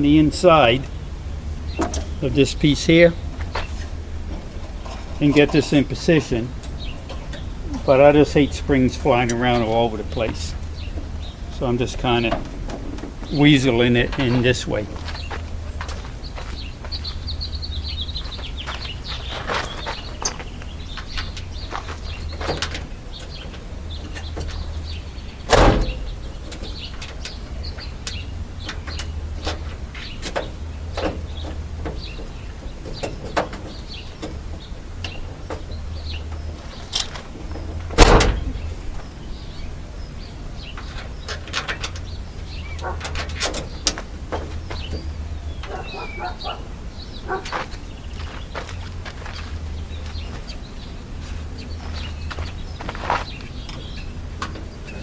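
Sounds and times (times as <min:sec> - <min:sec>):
bird chirping: 0:00.0 - 0:55.0
steady low hum: 0:00.0 - 0:55.0
loud knocks: 0:37.9 - 0:38.7.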